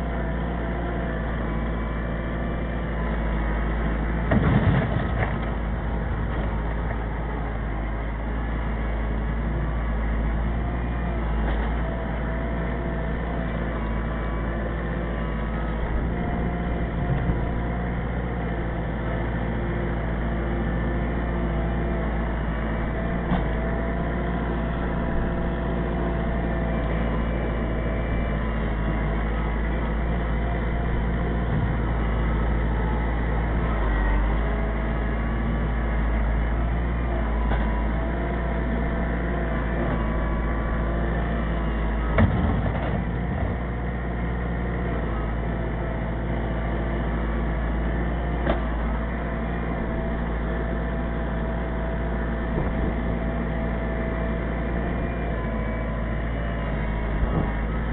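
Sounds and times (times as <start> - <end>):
tractor diesel engine running: 0.0 - 57.9
knocks and clunks: 4.2 - 5.6, 42.1 - 43.6.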